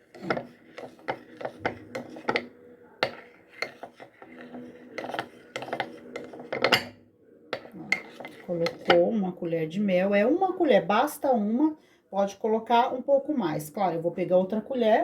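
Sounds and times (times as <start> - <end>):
spoon clinking against cup: 0.2 - 7.0.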